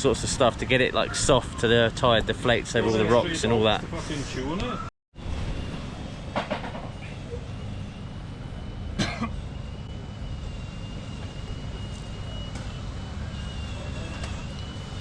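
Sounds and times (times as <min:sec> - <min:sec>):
motorbike engines rumbling: 0:00.0 - 0:15.0
faint high whine: 0:05.2 - 0:15.0.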